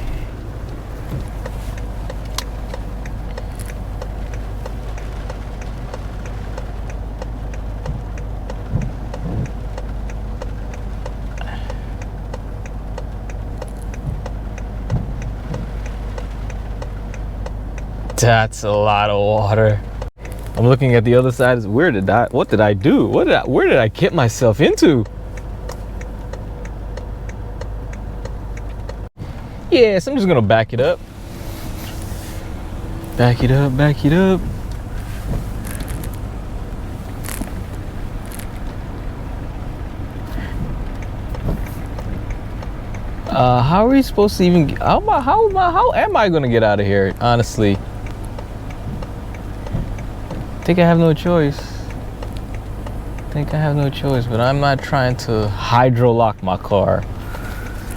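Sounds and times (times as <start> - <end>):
car engine humming: 0.0 - 57.9
car indicator ticking: 0.0 - 57.9
short hisses: 31.2 - 33.8.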